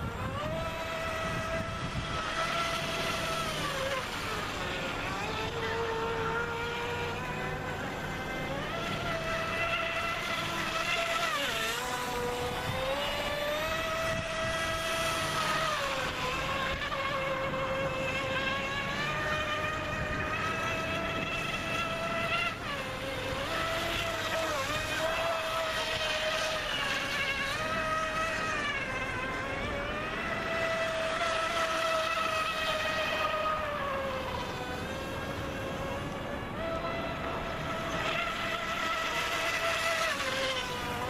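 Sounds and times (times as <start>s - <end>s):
electric boat motor whining: 0.0s - 41.0s.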